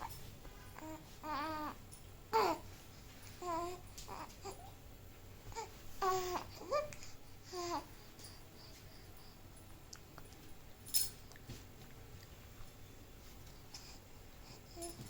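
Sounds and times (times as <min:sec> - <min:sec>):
baby babbling: 0:00.8 - 0:02.6, 0:03.4 - 0:04.7, 0:05.5 - 0:07.9.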